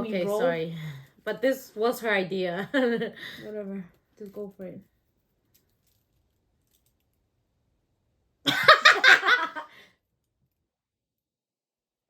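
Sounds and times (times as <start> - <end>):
woman laughing: 8.5 - 9.7.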